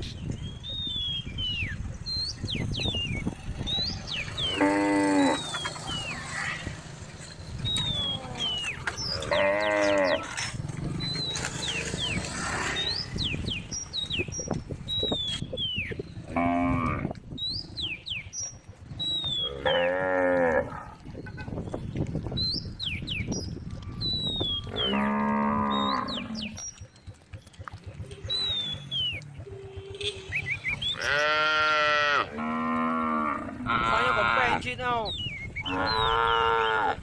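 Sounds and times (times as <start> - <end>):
cows mooing: 3.9 - 6.8, 7.9 - 13.2, 16.2 - 17.2, 19.3 - 21.1, 24.6 - 26.6, 28.1 - 34.6, 35.6 - 37.0.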